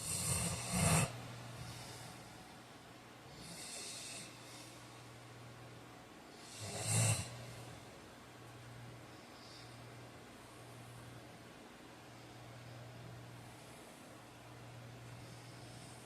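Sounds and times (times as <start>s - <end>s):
man snoring: 0.0s - 2.0s, 3.3s - 4.4s, 6.4s - 7.4s
soft breath: 0.0s - 5.4s, 8.9s - 16.0s.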